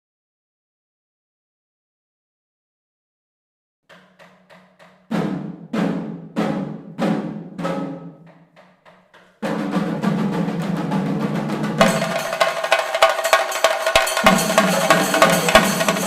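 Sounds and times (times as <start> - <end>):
chenda drums: 3.9 - 16.0
cymbals: 9.4 - 16.0.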